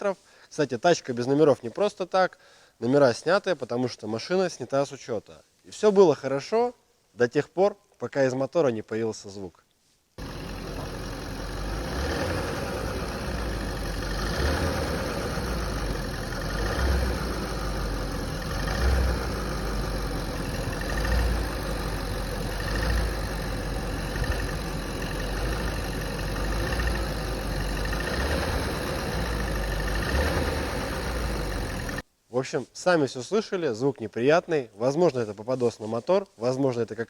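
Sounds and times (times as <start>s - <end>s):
car engine running: 10.2s - 32.0s
engine knocking: 10.2s - 32.0s.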